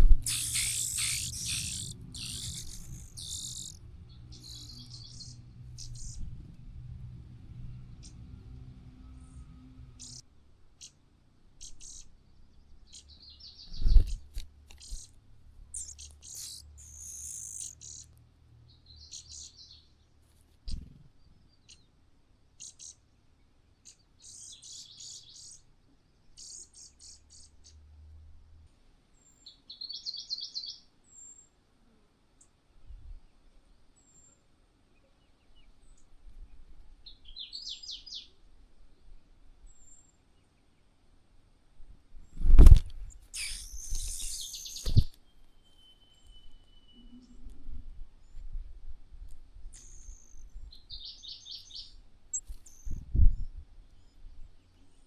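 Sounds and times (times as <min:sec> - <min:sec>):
small birds chirping: 0:00.0 - 0:07.0, 0:07.7 - 0:27.8, 0:37.0 - 0:38.4, 0:42.2 - 0:47.5, 0:49.2 - 0:55.0
faint high peeps: 0:00.2 - 0:06.1, 0:15.8 - 0:18.0, 0:42.6 - 0:47.4
sharp low thump: 0:42.4 - 0:43.1.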